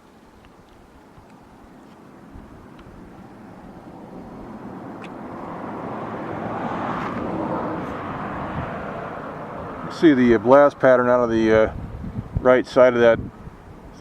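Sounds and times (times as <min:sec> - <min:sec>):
vehicle passing: 0:02.0 - 0:12.3.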